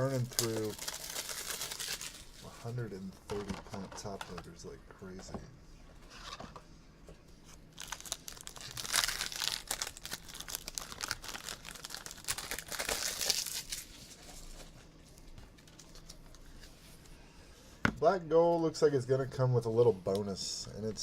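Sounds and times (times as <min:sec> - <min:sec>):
plastic packaging crinkling and tearing: 0:00.0 - 0:04.2, 0:07.7 - 0:16.3.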